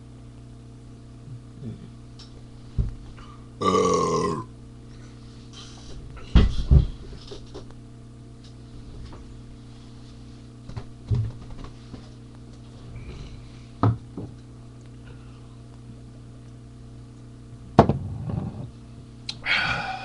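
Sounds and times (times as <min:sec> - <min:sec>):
electrical hum: 0:00.0 - 0:20.0.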